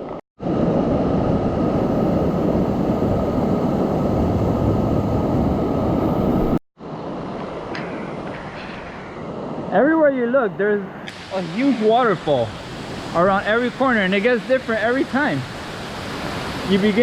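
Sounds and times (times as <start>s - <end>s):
waterfall roaring: 11.1s - 17.0s.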